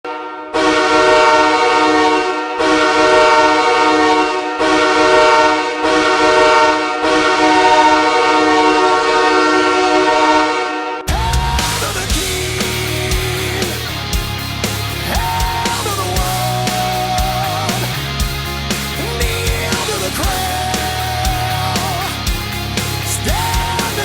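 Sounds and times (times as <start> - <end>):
ice hockey goal horn blasts: 0.0 - 11.1.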